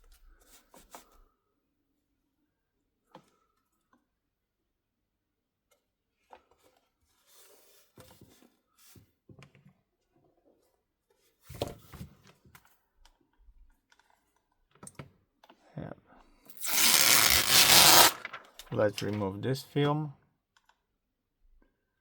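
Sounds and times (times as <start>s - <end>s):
brief rustle: 16.5s - 19.2s.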